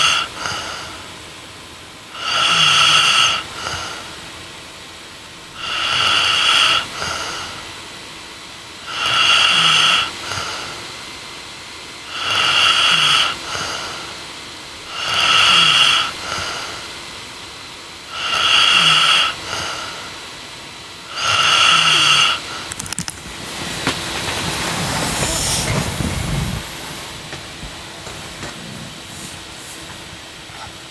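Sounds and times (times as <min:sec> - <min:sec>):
woman snoring: 0:00.0 - 0:01.1, 0:02.1 - 0:04.3, 0:05.6 - 0:07.8, 0:08.8 - 0:11.0, 0:12.0 - 0:17.0, 0:18.1 - 0:20.3, 0:21.0 - 0:22.7, 0:28.0 - 0:30.9.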